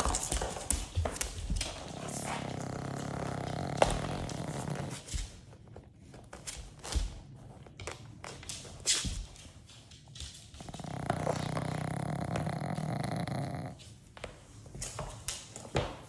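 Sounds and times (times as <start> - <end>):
dog snoring: 0.0 - 5.3, 10.6 - 13.9.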